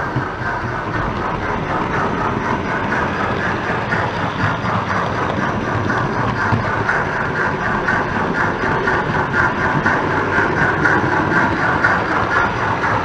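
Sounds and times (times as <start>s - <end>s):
locomotive running rumble: 0.0s - 13.0s
steam locomotive exhaust chuffs: 0.0s - 13.0s.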